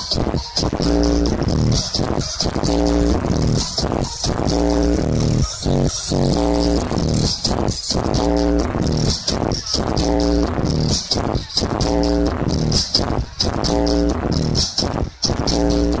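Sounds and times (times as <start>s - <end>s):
electronic dance music: 0.0s - 16.0s.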